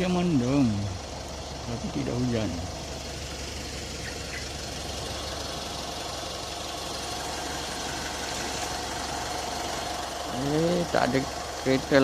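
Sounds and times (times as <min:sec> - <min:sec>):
pickup engine running: 0:00.0 - 0:12.0.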